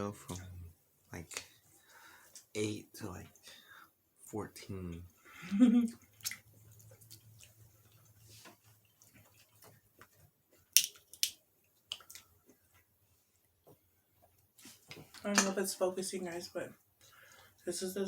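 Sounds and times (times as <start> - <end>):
wet mouth clicks and smacks: 5.9 - 7.6, 10.8 - 12.3
person chewing: 5.9 - 10.0, 11.9 - 12.4.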